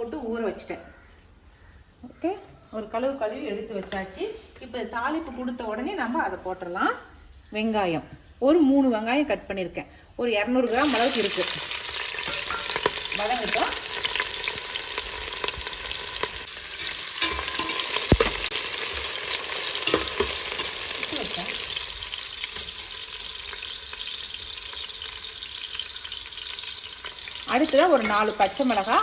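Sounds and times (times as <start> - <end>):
onions sizzling in oil: 10.7 - 29.0
spoon scraping a pan: 12.1 - 13.1, 16.2 - 21.2, 27.7 - 28.9.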